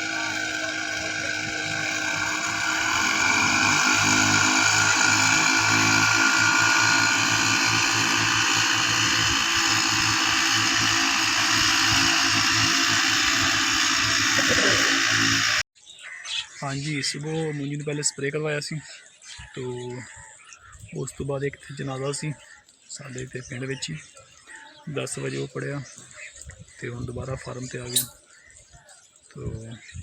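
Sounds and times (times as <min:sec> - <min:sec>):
small engine running under load: 0:00.0 - 0:15.6, 0:27.9 - 0:28.2.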